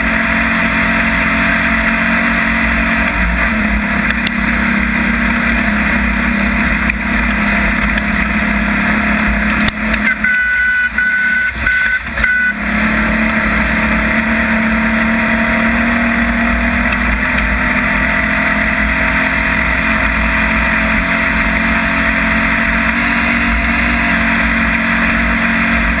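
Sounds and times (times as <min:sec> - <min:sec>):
drivetrain and terrain noise: 0:00.0 - 0:26.0
race vehicle engine running hard: 0:00.0 - 0:26.0
thin high whine: 0:22.8 - 0:24.8.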